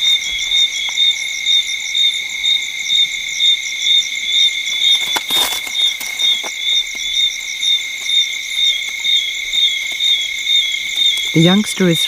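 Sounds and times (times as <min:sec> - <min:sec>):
crickets chirping: 0:00.0 - 0:12.0
rustle: 0:04.4 - 0:12.0.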